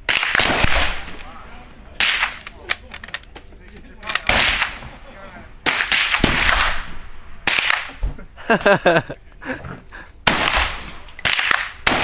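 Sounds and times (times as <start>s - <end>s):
rifle shots with echo: 0.0s - 1.4s, 2.0s - 2.5s, 4.1s - 5.0s, 5.6s - 8.0s, 10.2s - 12.0s.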